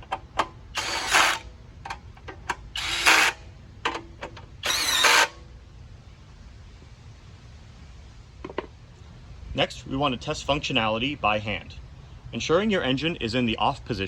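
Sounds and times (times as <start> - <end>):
power drill-driver whirring: 0.7 - 1.5, 2.7 - 3.4, 4.6 - 5.4.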